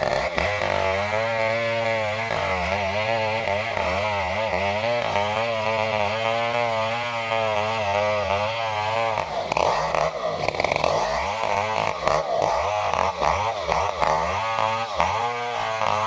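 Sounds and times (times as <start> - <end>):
chainsaw cutting log: 0.0 - 16.0.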